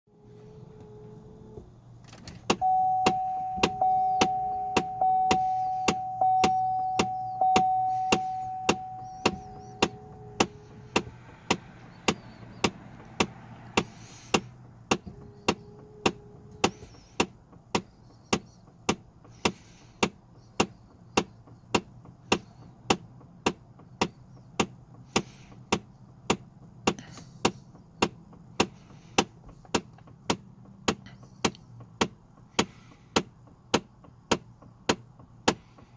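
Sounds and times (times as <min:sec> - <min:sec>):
actuator clicking: 0:02.0 - 0:24.8.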